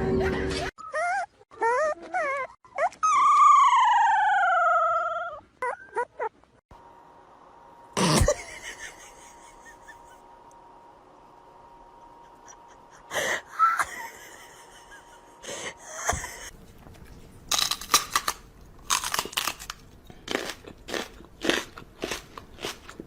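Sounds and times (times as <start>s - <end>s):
crunchy chewing: 16.6s - 23.0s.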